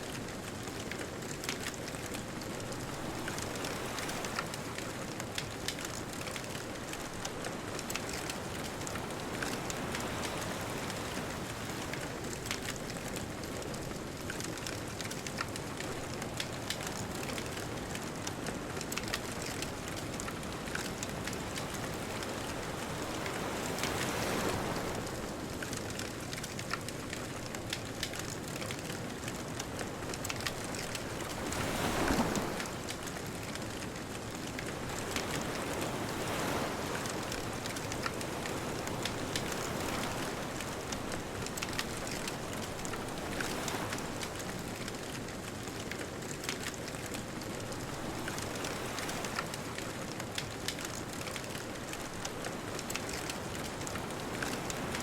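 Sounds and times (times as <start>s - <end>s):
bonfire crackling and popping: 0.1s - 24.2s, 24.8s - 55.0s
ocean waves rushing: 31.1s - 32.9s.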